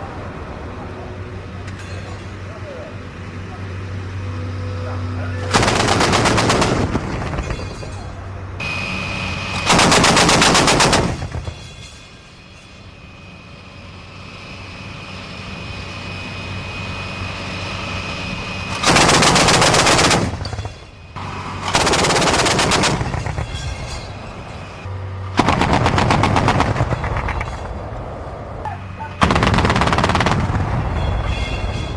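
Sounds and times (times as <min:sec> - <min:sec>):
autocannon bursts: 0:05.4 - 0:07.6, 0:09.3 - 0:11.6, 0:18.7 - 0:20.8, 0:21.6 - 0:23.6, 0:25.3 - 0:27.3, 0:29.2 - 0:31.1.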